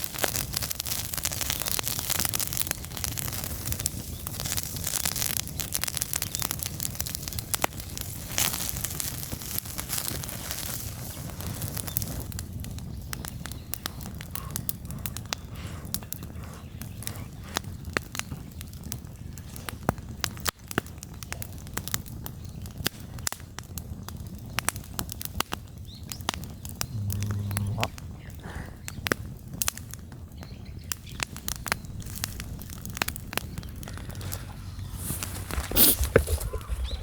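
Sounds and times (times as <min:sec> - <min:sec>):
bonfire crackling and popping: 0:00.0 - 0:37.0
low steady rumble: 0:26.8 - 0:28.1.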